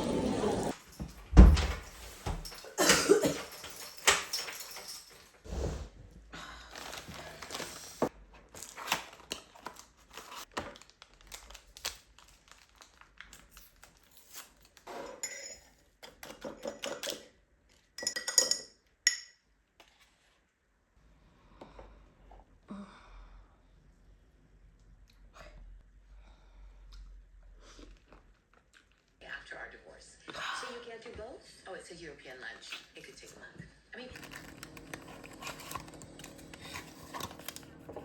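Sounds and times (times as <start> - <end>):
household items clattering: 0.0 - 5.4, 34.1 - 38.0.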